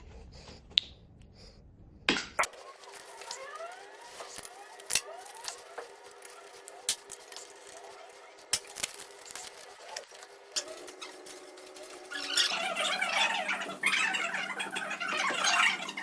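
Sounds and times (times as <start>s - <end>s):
electric motor whining: 2.5s - 11.1s.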